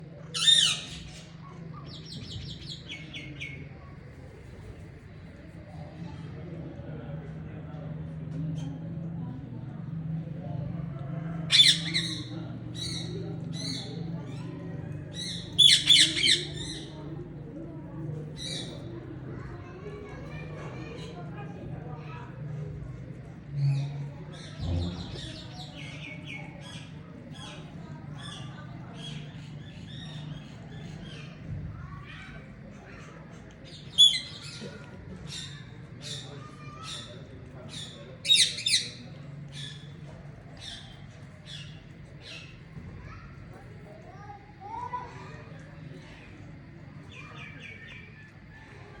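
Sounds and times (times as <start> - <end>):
birds chirping: 11.5 - 19.1, 23.7 - 43.1
steady low hum: 21.4 - 49.0.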